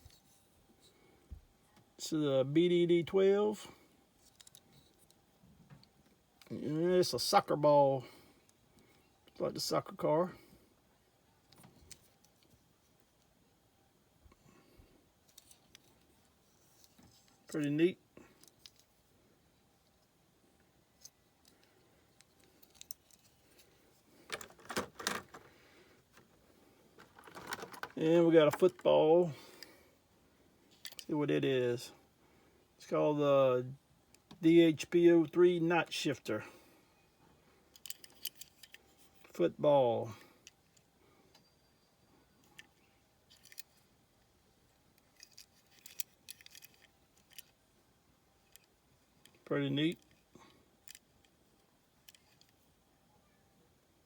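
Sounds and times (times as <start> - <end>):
toy cars clattering: 24.3 - 25.5, 27.0 - 28.9, 45.0 - 47.5
plastic packaging crinkling: 27.0 - 28.0.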